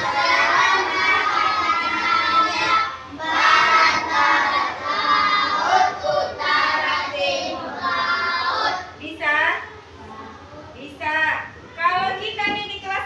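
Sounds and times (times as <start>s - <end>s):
children chanting in unison: 0.0s - 9.0s.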